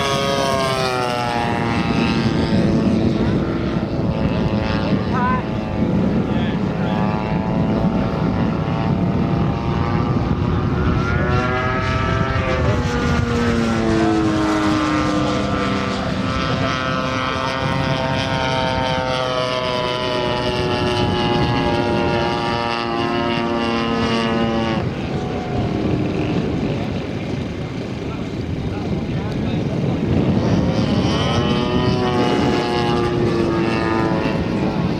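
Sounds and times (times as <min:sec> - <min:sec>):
model plane engine and propeller: 0:00.0 - 0:34.9.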